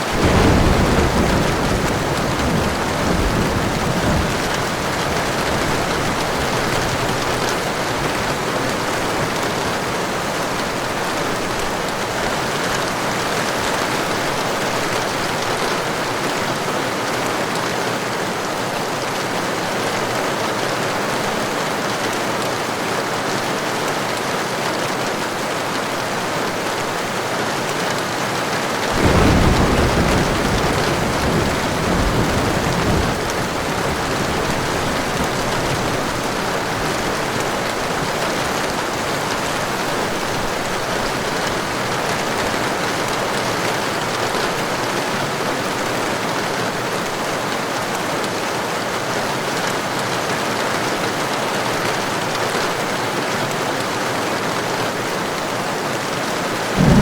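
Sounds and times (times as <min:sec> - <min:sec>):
heavy rain falling: 0:00.0 - 0:57.0
thunder rolling: 0:00.1 - 0:09.7, 0:28.9 - 0:39.8, 0:56.7 - 0:57.0.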